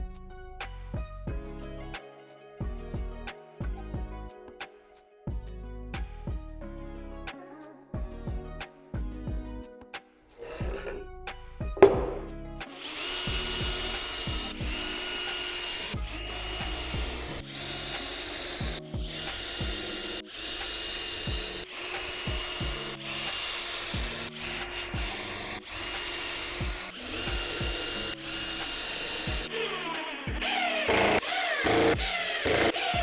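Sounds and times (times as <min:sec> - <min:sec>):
background music with a beat: 0:00.0 - 0:06.6, 0:07.3 - 0:33.0
power tool whining and grinding: 0:11.8 - 0:33.0.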